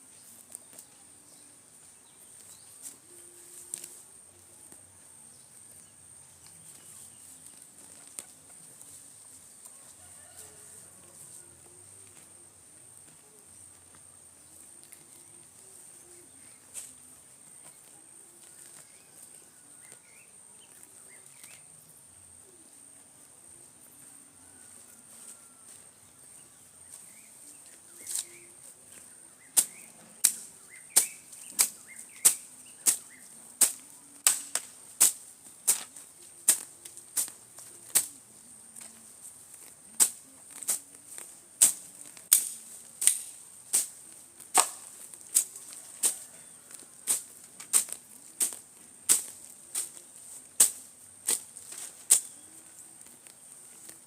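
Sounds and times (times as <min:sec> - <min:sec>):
faint chirps: 0:00.0 - 0:34.2
loud sharp chopping strikes: 0:44.5 - 0:44.9.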